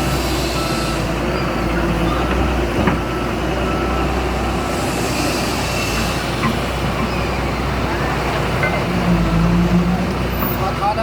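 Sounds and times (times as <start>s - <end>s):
reversing alarm beeping: 0.0s - 8.2s
heavy diesel engine running: 0.0s - 11.0s.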